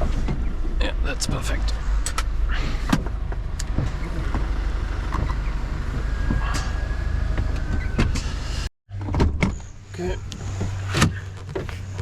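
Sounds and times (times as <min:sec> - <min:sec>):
diesel truck engine rumbling: 0:00.0 - 0:12.0.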